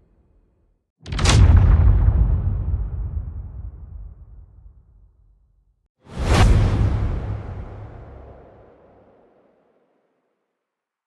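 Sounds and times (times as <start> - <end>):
low rumbling boom: 1.1 - 5.1, 6.2 - 9.2.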